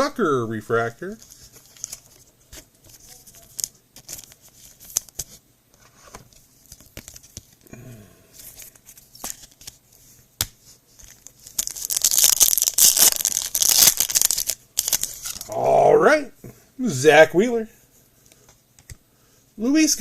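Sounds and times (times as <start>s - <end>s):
cards clicking and rustling: 1.2s - 5.4s, 6.0s - 7.6s, 8.4s - 9.8s, 10.4s - 15.5s
card pack wrapper tearing: 11.1s - 15.6s.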